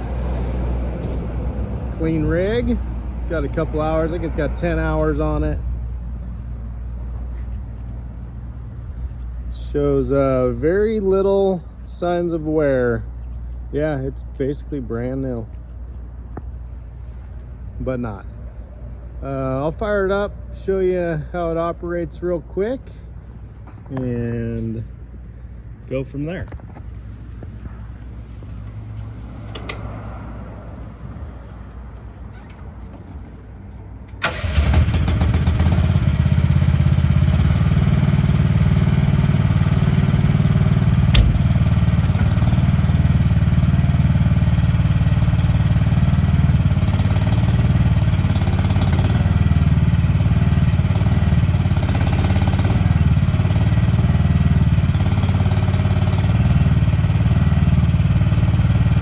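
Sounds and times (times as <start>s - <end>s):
mini excavator engine: 34.2s - 59.0s
sharp knock: 41.1s - 41.4s.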